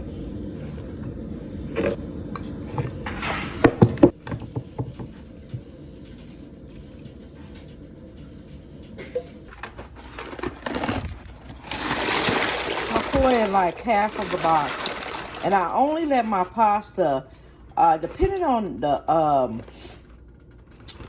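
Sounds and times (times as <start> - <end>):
steady low hum: 0.0 - 11.7
pots and utensils clattering: 9.0 - 16.4.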